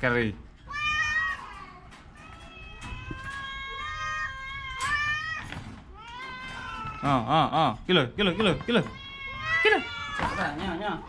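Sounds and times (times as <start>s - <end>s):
cat meowing: 0.7s - 7.2s, 8.4s - 11.0s.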